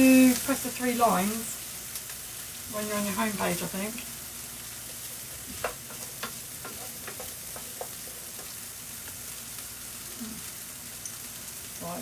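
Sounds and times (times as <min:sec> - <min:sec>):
beans sizzling in a pan: 0:00.0 - 0:12.0.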